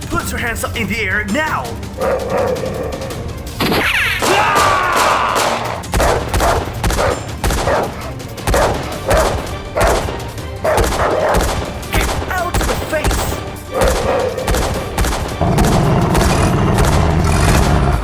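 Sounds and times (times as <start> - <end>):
gunshot sound effects: 3.6 - 18.0.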